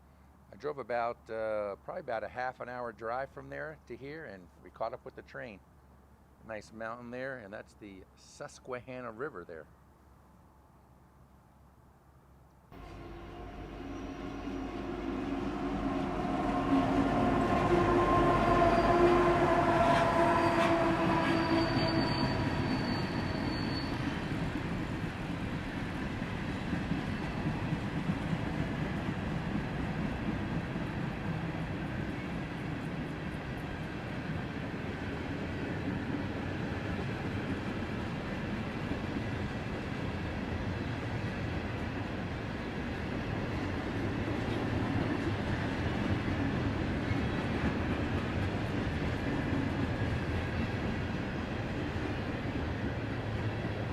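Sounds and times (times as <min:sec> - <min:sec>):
train wheel squeal: 0:12.8 - 0:24.5, 0:27.0 - 0:27.7
diesel locomotive engine: 0:12.8 - 0:53.9.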